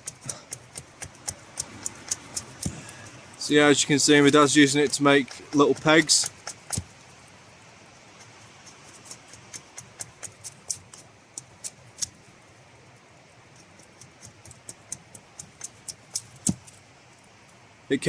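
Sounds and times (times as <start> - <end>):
axe cutting wood: 0.0 - 3.2, 4.1 - 6.9, 14.0 - 16.7.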